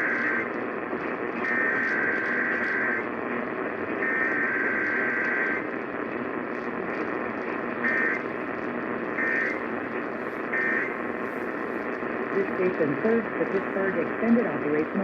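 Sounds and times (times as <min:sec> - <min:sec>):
radio static hiss: 0:00.0 - 0:15.0
two-tone data buzzing: 0:00.0 - 0:15.0.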